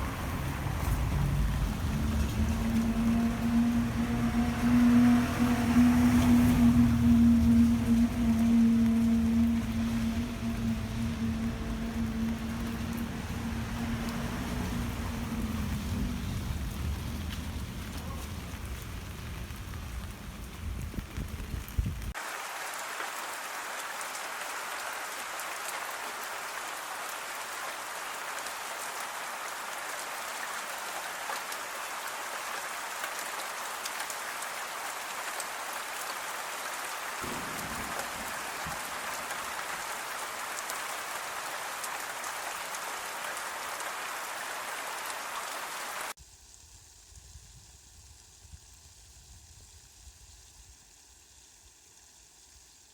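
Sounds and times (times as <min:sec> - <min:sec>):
low rumble: 0:00.0 - 0:22.1, 0:37.2 - 0:40.2
heavier deeper rain: 0:00.0 - 0:52.9
steady rain falling: 0:00.0 - 0:52.9.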